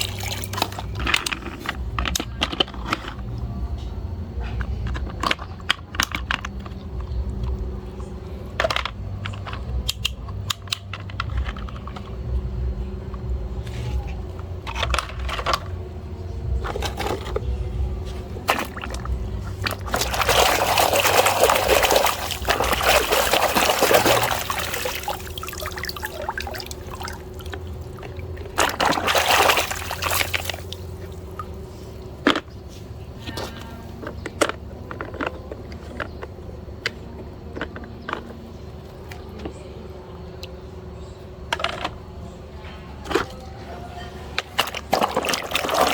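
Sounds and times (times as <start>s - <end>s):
water running: 0.0s - 1.2s, 18.5s - 31.6s, 44.6s - 45.9s
toys clicking and knocking: 0.1s - 17.6s, 32.2s - 39.6s, 41.4s - 42.1s.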